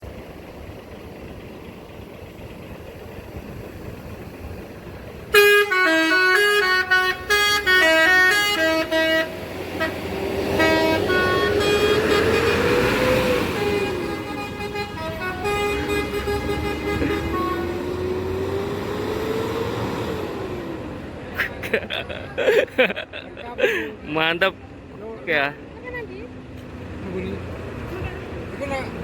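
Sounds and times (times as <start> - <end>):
bus horn playing a tune: 5.3 - 18.3.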